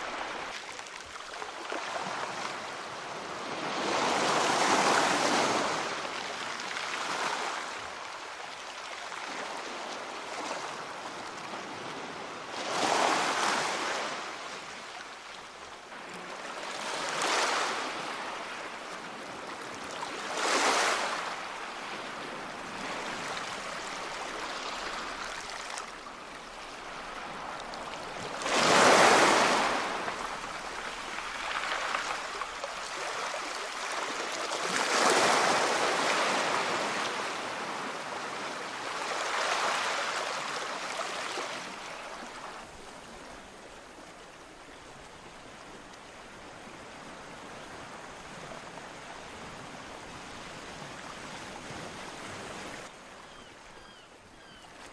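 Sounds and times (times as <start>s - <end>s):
waves breaking ashore: 15.9s - 43.4s.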